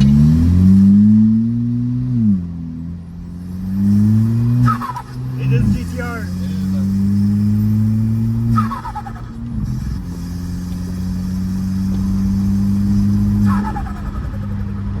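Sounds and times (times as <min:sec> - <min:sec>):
car engine under throttle: 0:00.0 - 0:15.0
turbo flutter and whistle: 0:03.8 - 0:14.6.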